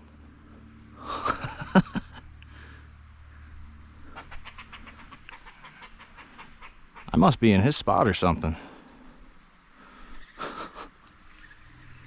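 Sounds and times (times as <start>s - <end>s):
squirrel chattering in alarm: 4.1s - 7.2s.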